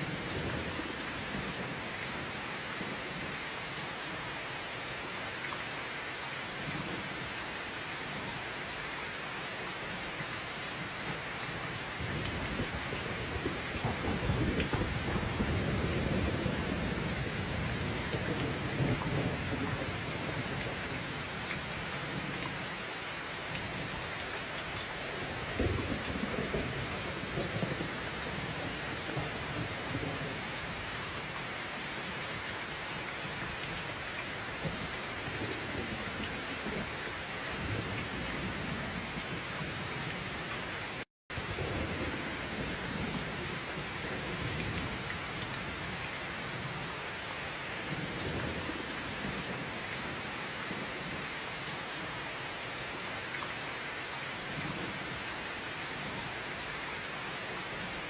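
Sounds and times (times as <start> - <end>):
heavy rain: 0.0 - 58.0
distant thunder rumbling: 12.4 - 20.6, 25.5 - 30.5.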